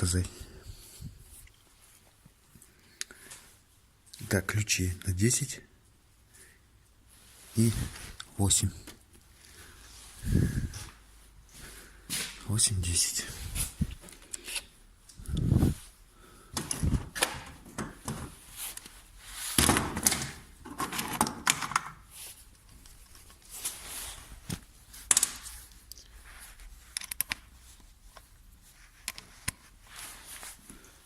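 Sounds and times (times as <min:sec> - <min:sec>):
rustling and scraping: 0:07.0 - 0:21.4, 0:22.0 - 0:31.0.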